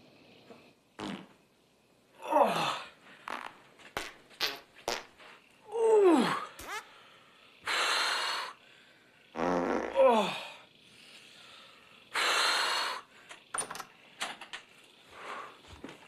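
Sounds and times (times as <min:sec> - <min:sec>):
man groaning: 0:02.2 - 0:02.9, 0:05.7 - 0:06.6, 0:09.9 - 0:10.6.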